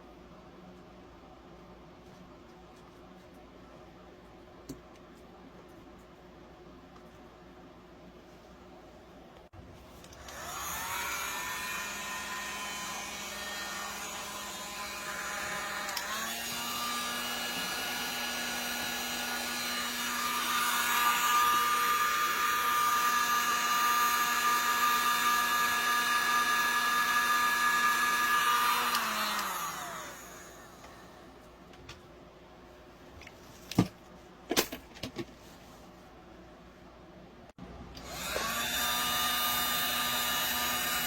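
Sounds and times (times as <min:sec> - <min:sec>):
drill motors whining: 0:10.1 - 0:31.1, 0:38.0 - 0:41.0.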